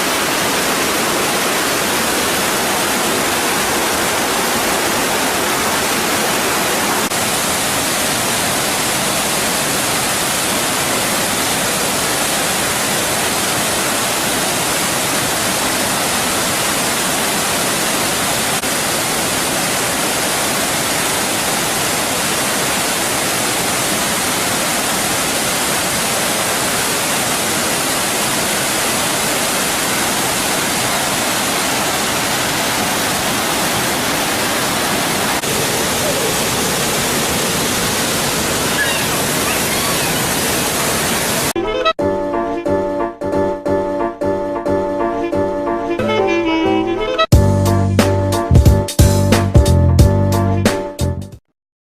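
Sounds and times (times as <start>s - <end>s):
waterfall rushing: 0.0s - 41.6s.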